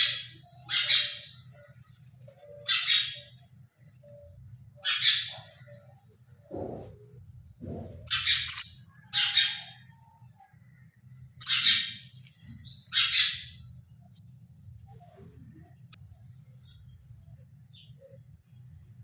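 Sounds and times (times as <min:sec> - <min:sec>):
nestling birds begging calls: 0:00.0 - 0:01.6, 0:02.4 - 0:03.4, 0:04.8 - 0:05.8, 0:07.6 - 0:09.9, 0:11.2 - 0:13.7
faint low hum: 0:05.5 - 0:19.0.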